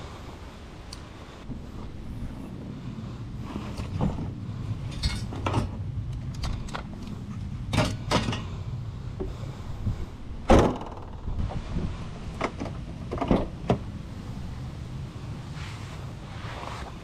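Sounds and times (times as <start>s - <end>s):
sharp clunks and knocks: 10.5s - 11.6s.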